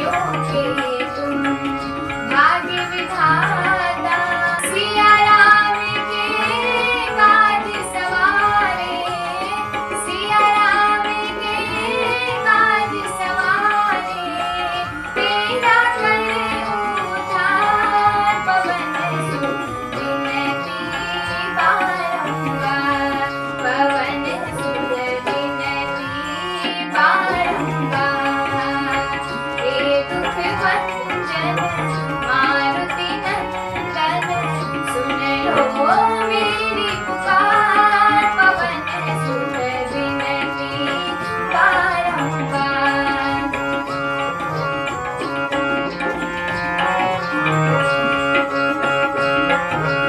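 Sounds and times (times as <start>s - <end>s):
tabla rhythm: 0.0s - 50.0s.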